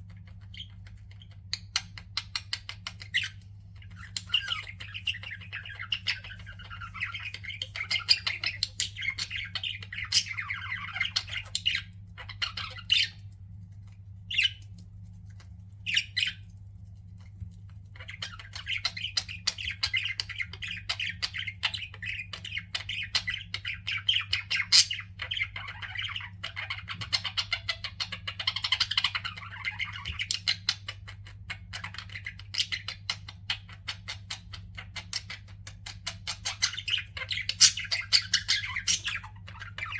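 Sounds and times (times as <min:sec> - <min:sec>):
steady low hum: 0:00.0 - 0:26.8
budgerigars chattering: 0:00.4 - 0:13.2, 0:18.0 - 0:39.9.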